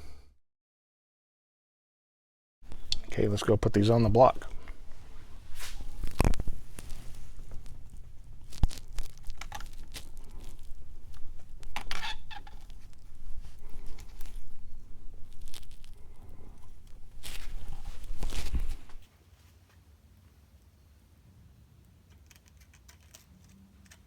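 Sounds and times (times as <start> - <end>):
scraping: 2.7 - 19.0
small parts clicking and rustling: 5.6 - 19.0, 22.0 - 24.0.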